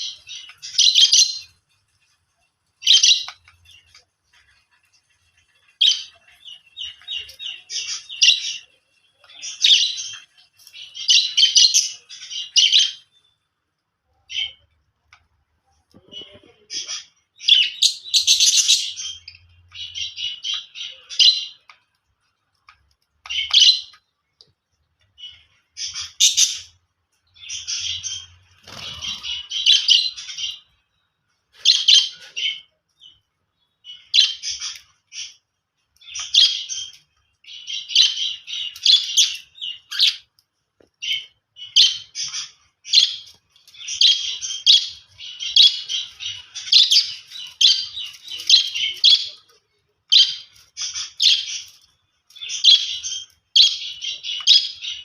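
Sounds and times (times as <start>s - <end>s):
budgerigar chirping and chattering: 2.8s - 3.9s, 5.8s - 13.1s, 16.0s - 21.7s, 23.3s - 24.0s, 25.2s - 26.7s, 27.4s - 30.7s, 31.6s - 33.2s, 33.8s - 35.4s, 36.0s - 40.3s, 41.0s - 51.7s, 52.4s - 55.0s.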